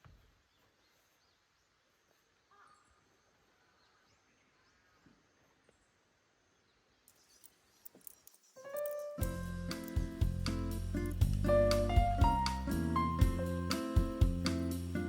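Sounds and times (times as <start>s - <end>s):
faint bird call: 2.4s - 5.7s.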